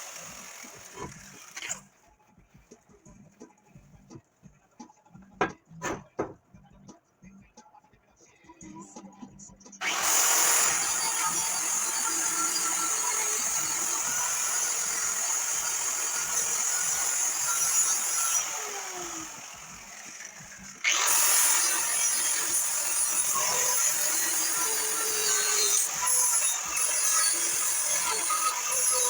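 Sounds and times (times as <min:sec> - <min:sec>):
angle grinder on steel: 0:09.8 - 0:29.0.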